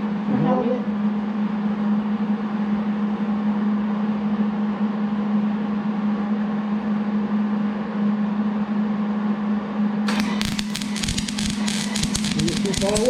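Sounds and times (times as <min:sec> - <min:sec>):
welder electrical hum: 0:10.1 - 0:13.0.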